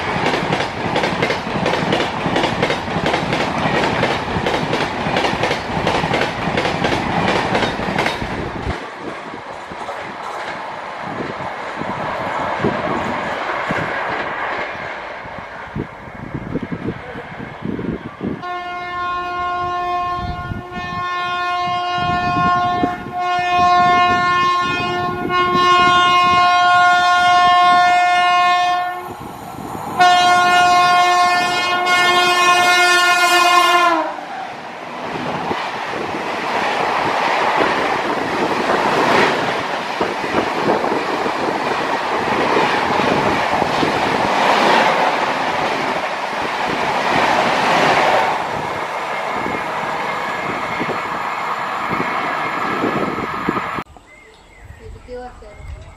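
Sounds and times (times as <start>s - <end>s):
train wheels clattering on track: 0.0s - 15.0s, 34.3s - 49.6s
locomotive horn blasts: 18.4s - 29.0s, 30.0s - 34.2s.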